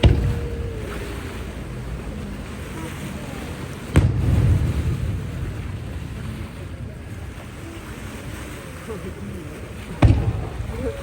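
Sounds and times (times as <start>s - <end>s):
firework shell boom: 0.0s - 0.5s, 10.0s - 10.8s
low rumbling echo: 0.0s - 11.0s.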